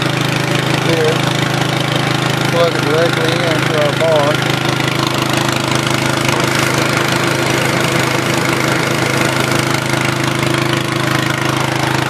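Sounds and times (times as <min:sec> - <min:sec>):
turbine machine hum: 0:00.0 - 0:12.0.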